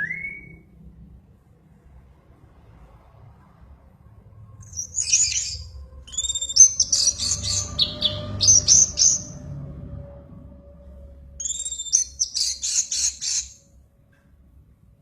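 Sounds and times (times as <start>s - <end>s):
songbird chirps and trills: 4.6s - 9.8s, 11.4s - 13.6s.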